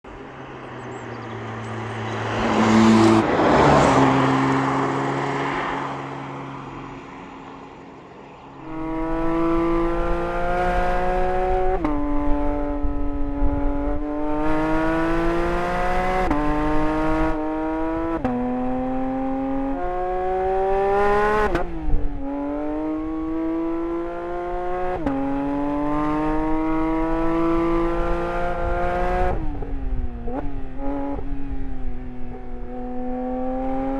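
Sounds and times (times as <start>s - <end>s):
car engine accelerating through gears: 0.1s - 6.7s, 8.6s - 33.9s
car passing by: 0.2s - 11.9s.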